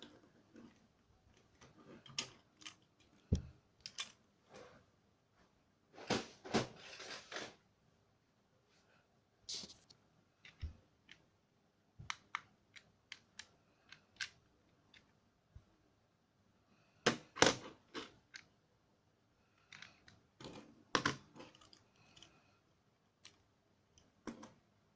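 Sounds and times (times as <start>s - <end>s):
plastic toy pieces clicking: 12.1s - 15.1s.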